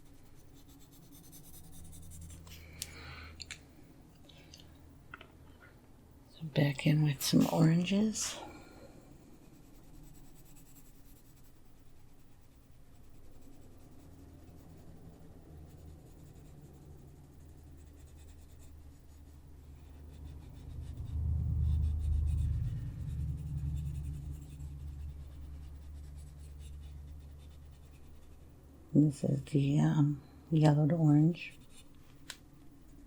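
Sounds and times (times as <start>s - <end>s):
colored pencil scratching on paper: 0.0s - 2.6s, 7.3s - 8.3s, 9.3s - 28.6s, 31.0s - 32.1s
low rumble: 19.6s - 31.2s.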